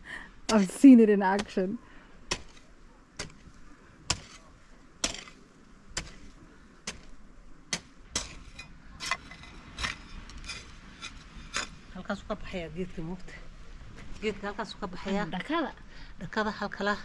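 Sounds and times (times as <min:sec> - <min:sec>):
hand hoe chopping soil: 0:00.4 - 0:11.7.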